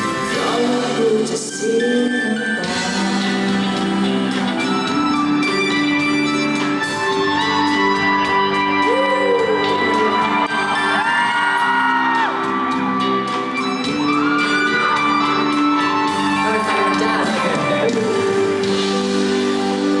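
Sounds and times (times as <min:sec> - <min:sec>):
live band echoing in hall: 0:00.0 - 0:20.0
audience shouts and whoops: 0:08.8 - 0:17.6
person singing sliding notes: 0:13.8 - 0:19.9.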